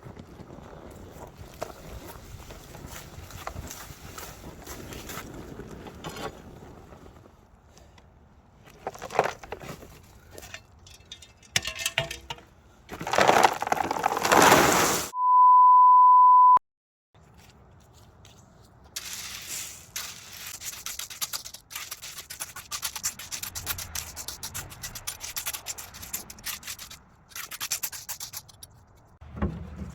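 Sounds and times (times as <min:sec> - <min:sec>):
gravel scraped by shovel: 0:08.6 - 0:10.6, 0:12.9 - 0:15.2, 0:19.0 - 0:28.7
rush of stones: 0:08.6 - 0:11.0, 0:12.9 - 0:15.1, 0:19.0 - 0:28.5
steady high beep: 0:15.2 - 0:16.6.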